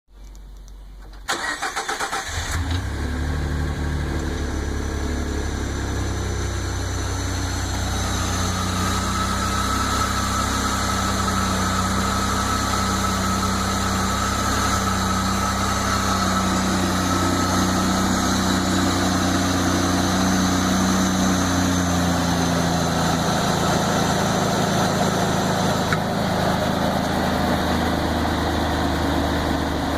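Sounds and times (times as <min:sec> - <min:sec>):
click: 0:00.2 - 0:01.2
car engine starting and idling: 0:00.2 - 0:29.9
high-pitched whine: 0:03.6 - 0:29.9.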